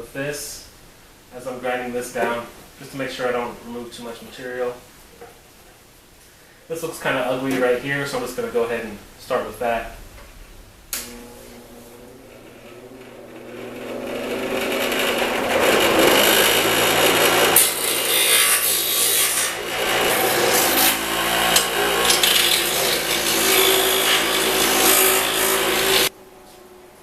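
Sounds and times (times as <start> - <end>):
grinder motor humming: 11.0 - 26.1
metal part rasping on grinding wheel: 11.0 - 26.1.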